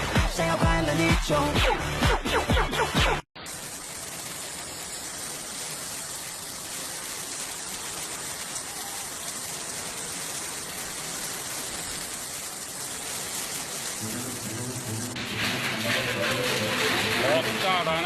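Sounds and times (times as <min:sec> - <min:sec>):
heavy rain pouring: 0:00.0 - 0:18.0.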